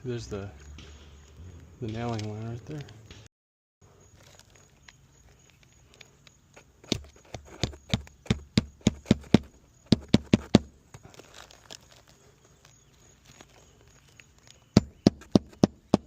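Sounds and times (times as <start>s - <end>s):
hammer hitting nail: 6.9s - 10.7s, 14.8s - 16.0s.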